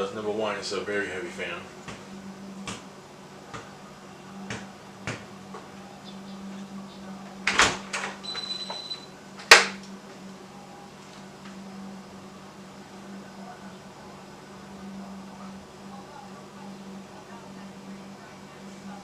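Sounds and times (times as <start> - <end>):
ceiling fan humming: 0.0 - 19.0
fan clicks and knocks: 4.4 - 5.7, 9.4 - 10.0.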